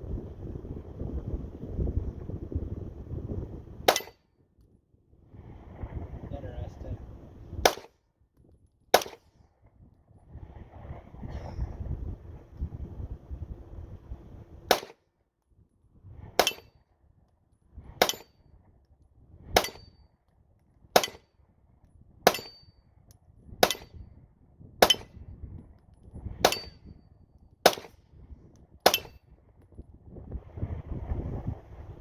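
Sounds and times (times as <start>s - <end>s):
pistol shots: 7.6s - 7.9s, 9.0s - 9.2s, 14.7s - 14.9s, 27.7s - 27.9s.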